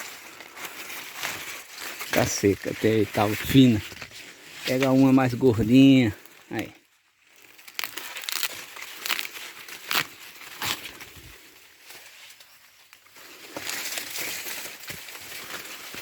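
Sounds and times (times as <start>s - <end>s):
corn leaves and husks rustling: 0.0s - 16.0s
corn ears snapping: 7.4s - 11.2s.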